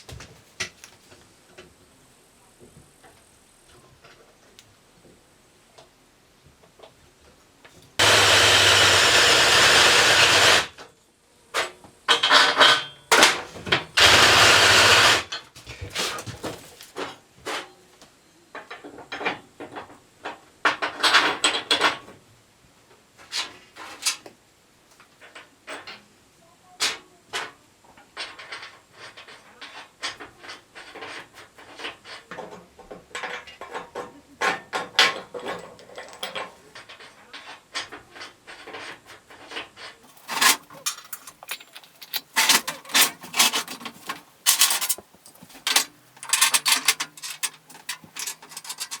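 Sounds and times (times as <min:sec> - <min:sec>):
power tool running: 0:08.0 - 0:10.8, 0:14.0 - 0:15.3
tools and metal parts rattling: 0:28.1 - 0:49.0.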